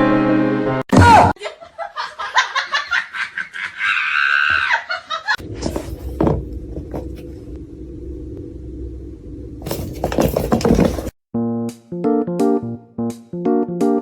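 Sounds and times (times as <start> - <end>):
steady low hum: 5.4 - 11.2.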